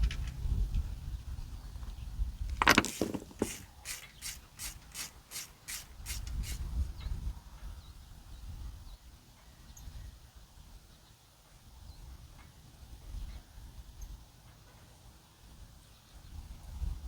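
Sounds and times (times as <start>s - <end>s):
metallic clatter: 2.6s - 6.6s
ratchet wrench clicking: 2.6s - 6.8s.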